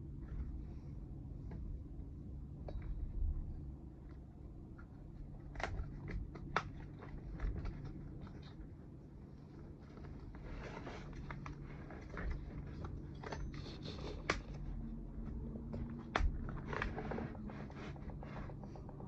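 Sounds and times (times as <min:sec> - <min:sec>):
light scraping and rubbing: 0:09.8 - 0:14.7, 0:16.5 - 0:19.0.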